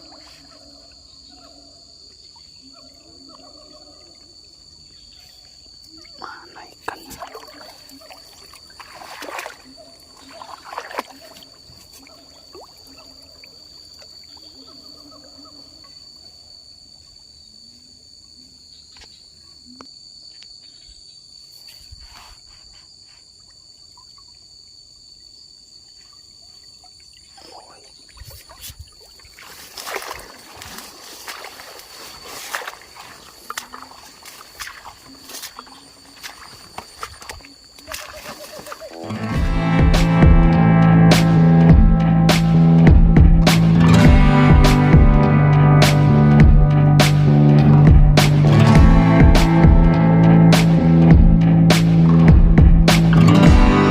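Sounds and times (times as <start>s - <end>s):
water splashing and trickling: 0.0s - 1.0s, 3.7s - 15.1s, 23.2s - 40.5s.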